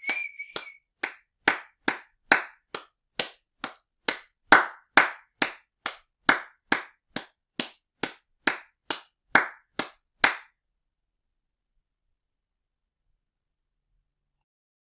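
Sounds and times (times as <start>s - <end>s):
hand clapping: 0.0s - 10.5s.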